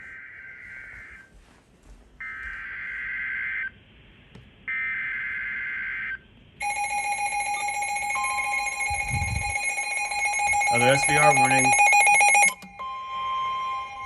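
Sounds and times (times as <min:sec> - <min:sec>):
two-tone alert signal: 0:06.6 - 0:14.0.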